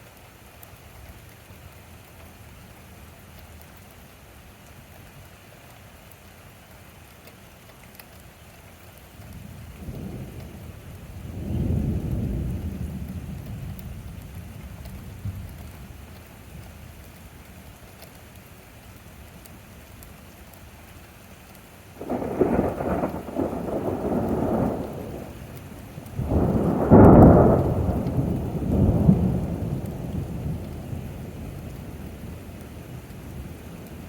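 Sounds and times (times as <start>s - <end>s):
steady rain: 0.0s - 34.0s
thunder rumbling: 9.7s - 15.6s, 22.0s - 34.0s.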